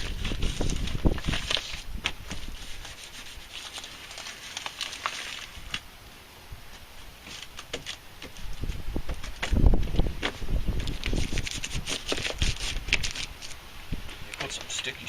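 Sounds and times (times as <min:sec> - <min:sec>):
plastic sheet crinkling: 0:00.0 - 0:05.9, 0:10.8 - 0:13.6.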